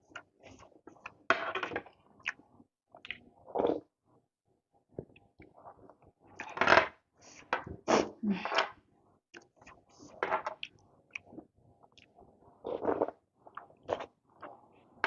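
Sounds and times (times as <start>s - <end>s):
slurping and sucking: 12.6s - 14.1s.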